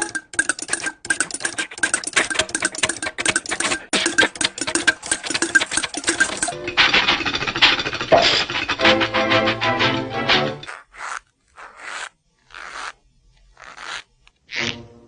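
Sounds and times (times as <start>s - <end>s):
cartoon clattering clicks: 0.0s - 8.8s.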